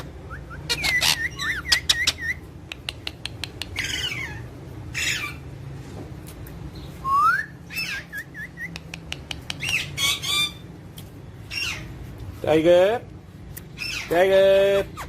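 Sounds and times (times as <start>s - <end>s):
parrots whistling: 0.0s - 5.4s, 7.0s - 8.8s, 9.5s - 10.6s
parrot squawks: 0.5s - 2.4s, 3.7s - 5.4s, 9.6s - 10.6s, 11.5s - 11.9s
sharp clicks: 8.7s - 9.8s.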